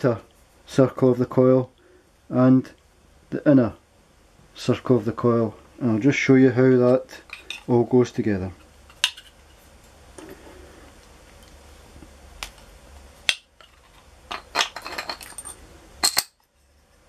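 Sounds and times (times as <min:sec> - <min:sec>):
metallic rattles and clinks: 0:14.3 - 0:16.4.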